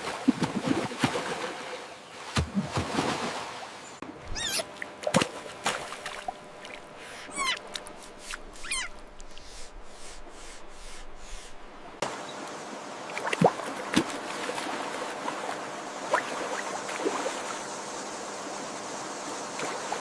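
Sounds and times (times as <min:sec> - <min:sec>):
squeaky animal calls: 0:04.3 - 0:04.7, 0:07.0 - 0:07.8, 0:08.5 - 0:09.6.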